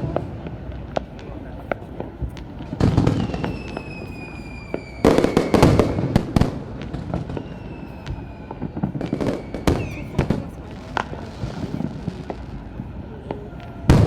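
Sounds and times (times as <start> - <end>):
fireworks bangs and crackles: 0.0 - 14.0
high descending whistle: 7.3 - 10.2.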